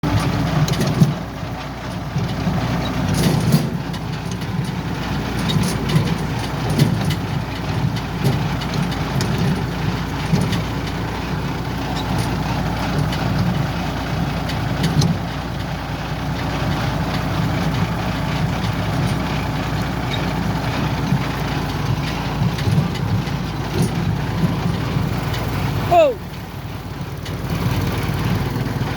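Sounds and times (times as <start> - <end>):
combine harvester running: 0.0 - 28.9.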